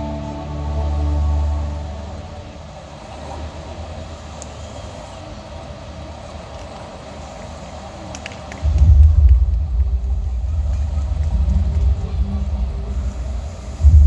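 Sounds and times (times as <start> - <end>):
music chord: 0.0 - 3.2
outdoor background noise: 0.0 - 14.0.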